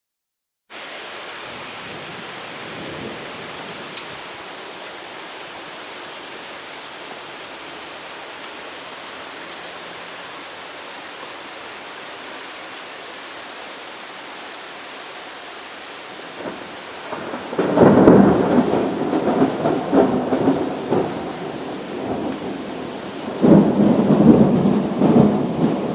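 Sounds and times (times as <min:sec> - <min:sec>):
steady rain hissing: 0:00.7 - 0:25.9
loud roll of thunder: 0:16.4 - 0:25.9.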